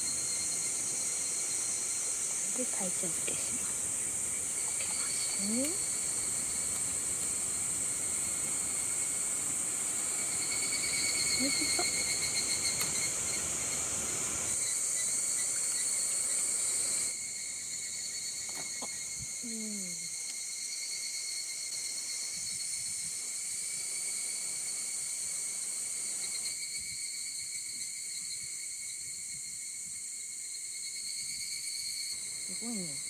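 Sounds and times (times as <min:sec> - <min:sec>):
insects shrilling: 0:00.0 - 0:22.8.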